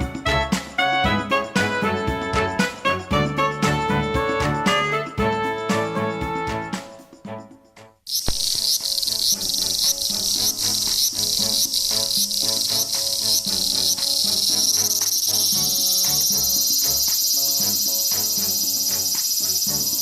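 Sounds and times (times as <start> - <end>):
music: 0.0 - 20.0
cicada buzzing song: 8.1 - 20.0.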